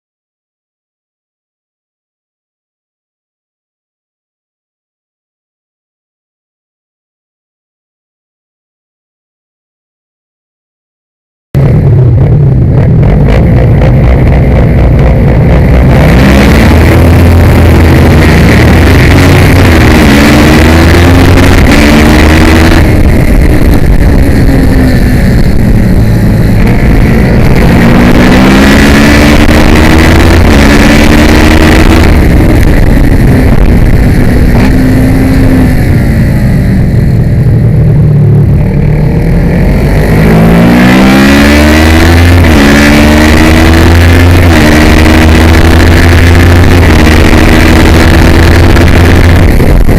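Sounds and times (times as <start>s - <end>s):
motorcycle engine accelerating: 11.6s - 49.9s.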